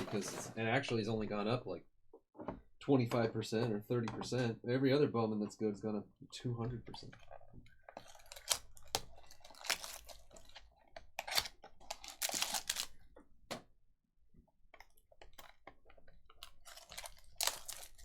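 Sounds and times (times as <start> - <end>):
packaging rustling and crinkling: 7.2 - 13.0, 15.4 - 18.0.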